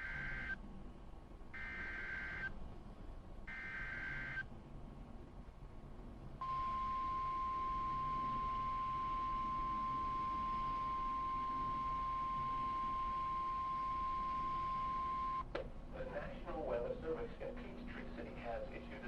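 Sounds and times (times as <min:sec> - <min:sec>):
data bursts: 0:00.0 - 0:00.6, 0:01.6 - 0:02.5, 0:03.5 - 0:04.4, 0:06.4 - 0:15.4
steady warning alarm tone: 0:00.0 - 0:00.6, 0:01.6 - 0:02.5, 0:03.5 - 0:04.5, 0:06.4 - 0:15.4.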